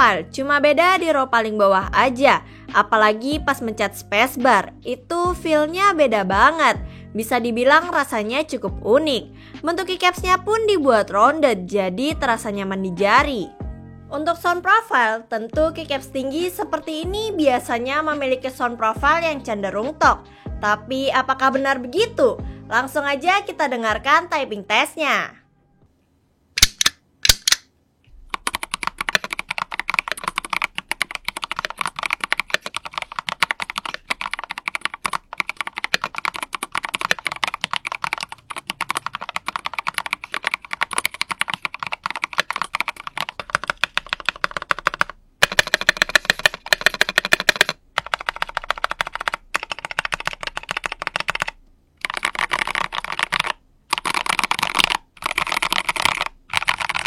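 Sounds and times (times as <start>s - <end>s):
mechanical keyboard typing: 26.6s - 27.6s, 28.2s - 57.0s.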